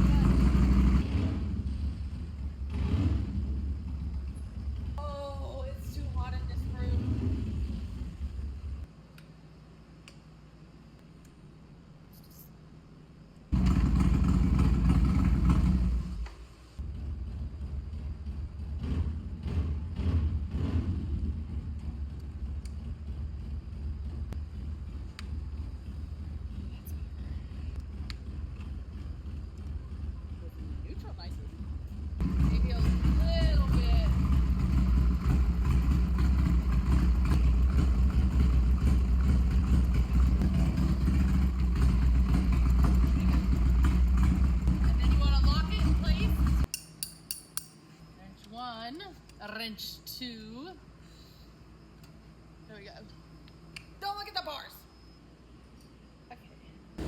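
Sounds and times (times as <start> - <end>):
motorcycle engine running: 0.0 - 8.9, 13.5 - 46.7.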